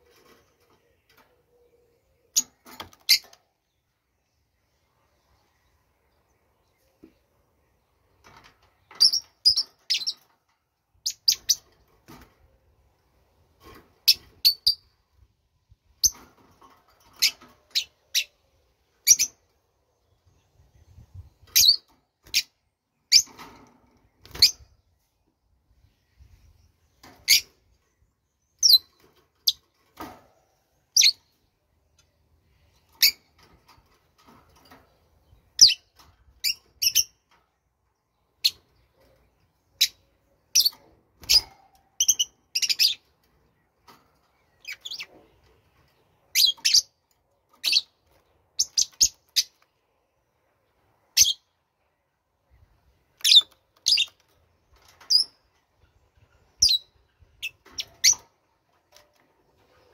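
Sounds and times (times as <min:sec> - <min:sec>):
small bird chirping: 0:08.8 - 0:10.3, 0:11.0 - 0:11.8, 0:17.1 - 0:23.4, 0:25.8 - 0:29.7, 0:30.5 - 0:33.4, 0:34.6 - 0:37.3, 0:38.0 - 0:49.8, 0:50.7 - 0:51.6, 0:52.5 - 0:59.9.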